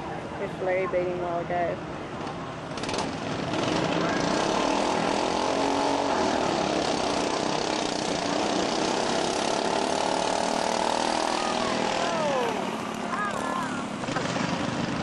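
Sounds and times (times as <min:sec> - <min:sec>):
lawnmower engines running: 0:00.0 - 0:15.0.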